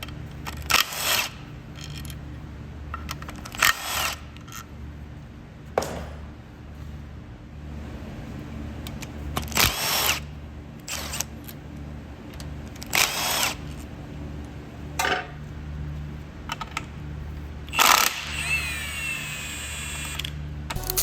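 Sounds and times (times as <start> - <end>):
steady low hum: 0.0 - 9.4, 20.4 - 21.0.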